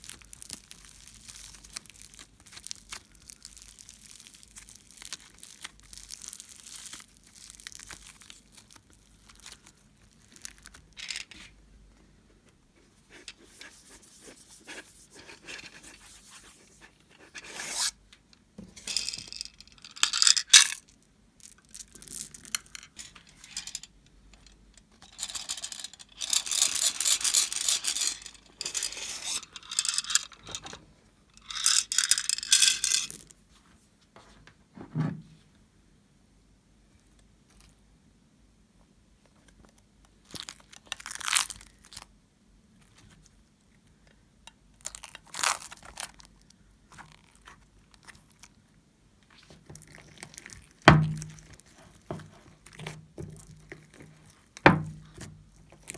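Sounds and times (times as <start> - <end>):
slime crackling and popping: 0.0 - 10.9.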